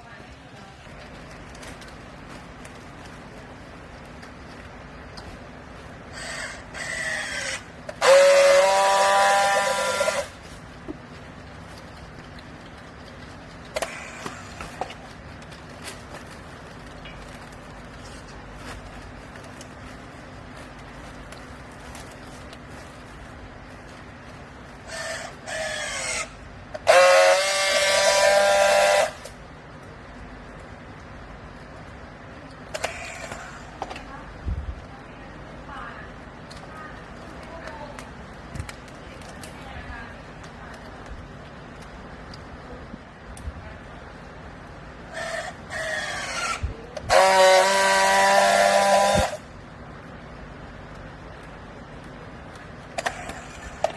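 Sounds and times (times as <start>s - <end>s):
loud horn-like tone: 8.0s - 10.4s, 26.8s - 29.3s, 47.1s - 49.4s
hydraulic pump whining: 24.9s - 29.3s.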